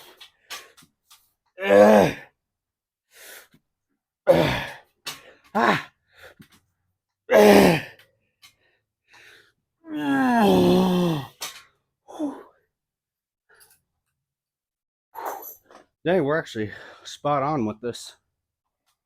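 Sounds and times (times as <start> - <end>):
man grunting and groaning: 1.6 - 2.3, 4.3 - 4.8, 5.5 - 6.0, 7.3 - 8.0, 9.8 - 11.4.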